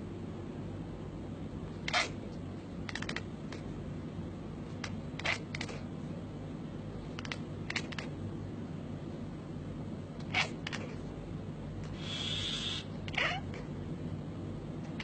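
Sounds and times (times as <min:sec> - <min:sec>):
cat making fluttering clicks: 0:02.8 - 0:03.3, 0:04.8 - 0:05.8, 0:07.2 - 0:08.1.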